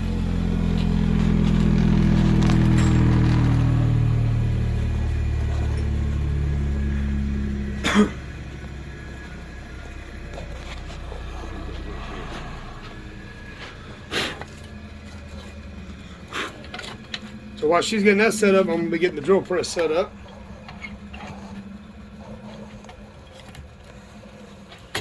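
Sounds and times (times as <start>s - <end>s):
electric motor winding down: 0.0s - 25.0s
low hum: 0.0s - 25.0s.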